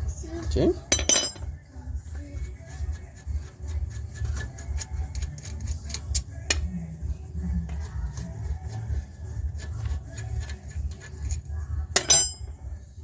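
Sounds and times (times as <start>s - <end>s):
spanner metal clicks and taps: 10.1s - 11.4s.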